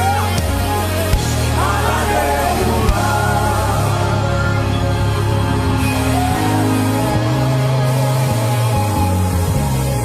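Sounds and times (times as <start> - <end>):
sustained low bass: 0.0 - 10.0
worship band held chords: 0.0 - 10.0.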